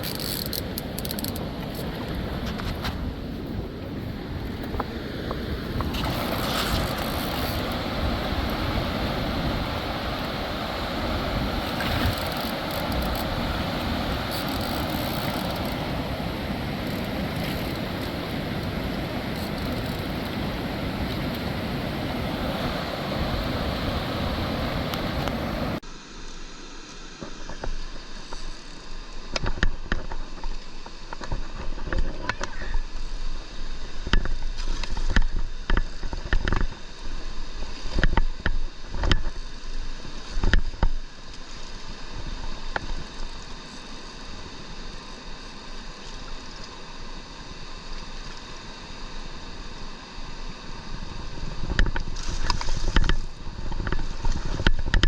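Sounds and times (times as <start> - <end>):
river water rushing: 0.0 - 27.3.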